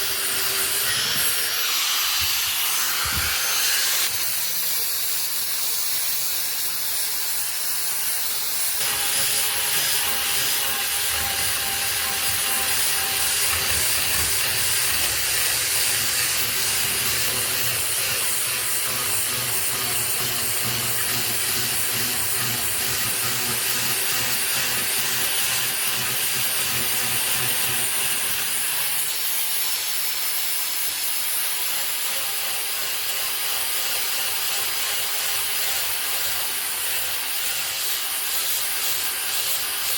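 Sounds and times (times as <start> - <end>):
angle grinder sanding wood: 0.0 - 39.9.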